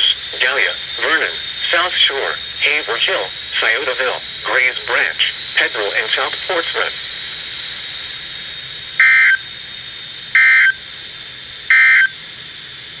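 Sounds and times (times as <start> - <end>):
radio hiss: 0.0 - 9.4
alert data tone bursts: 9.0 - 9.5, 10.3 - 10.8, 11.7 - 12.2.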